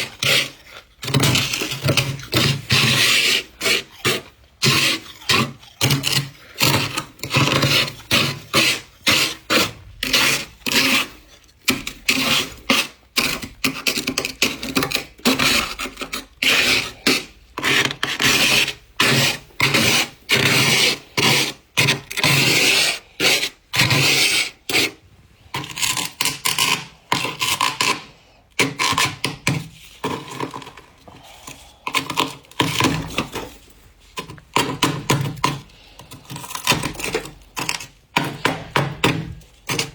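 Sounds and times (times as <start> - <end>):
scraper scraping frost: 0.0 - 13.0.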